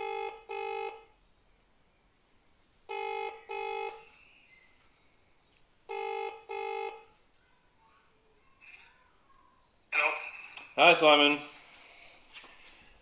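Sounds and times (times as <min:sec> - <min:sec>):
telephone ringback tone: 0:00.0 - 0:01.1, 0:02.9 - 0:04.1, 0:05.9 - 0:07.1.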